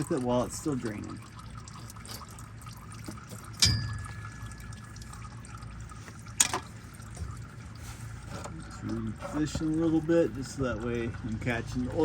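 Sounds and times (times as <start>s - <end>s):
oil trickling into a pan: 0.0s - 12.0s
metallic clank: 3.6s - 4.7s.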